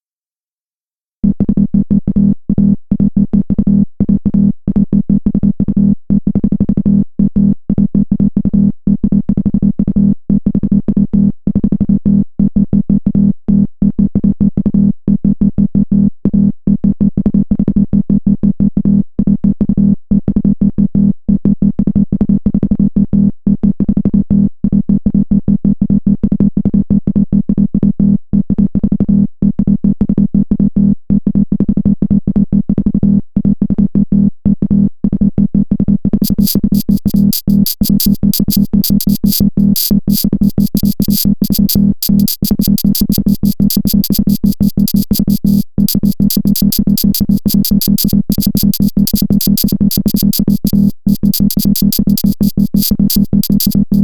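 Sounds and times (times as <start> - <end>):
stuttering synthesizer music: 36.2 - 54.0.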